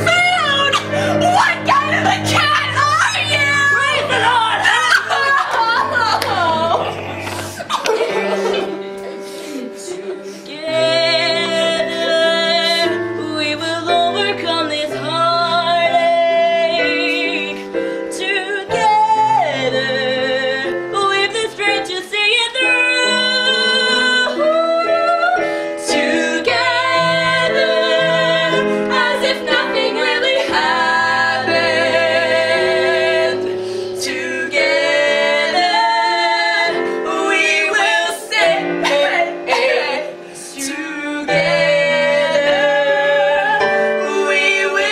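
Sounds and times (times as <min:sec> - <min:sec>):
voices singing a show tune: 0:00.0 - 0:08.7, 0:22.5 - 0:44.9
instrumental accompaniment: 0:00.0 - 0:44.9.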